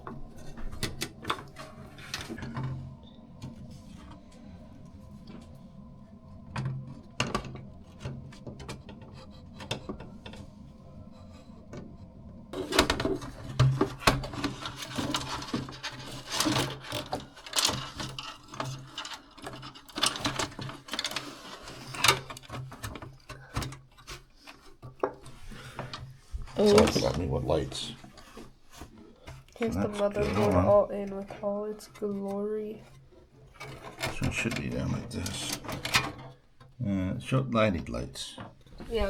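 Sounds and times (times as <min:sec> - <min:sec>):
computer parts clicking and clattering: 0:12.6 - 0:36.8.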